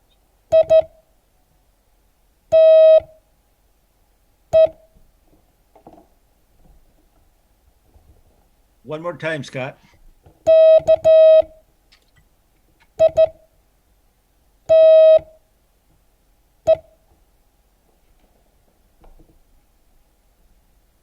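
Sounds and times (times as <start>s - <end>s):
morse code beeps: 0.5s - 0.9s, 2.5s - 3.1s, 4.6s - 4.8s, 10.5s - 11.6s, 13.0s - 13.4s, 14.7s - 15.3s.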